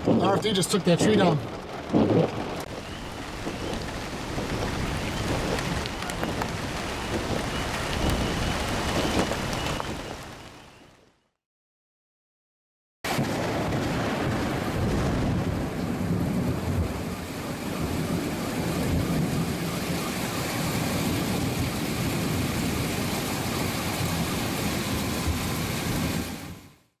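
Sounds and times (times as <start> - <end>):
low thunder rumble: 0.0 - 10.8, 13.1 - 26.6
gusty wind: 0.0 - 10.9
rain: 0.0 - 11.4, 13.1 - 26.9.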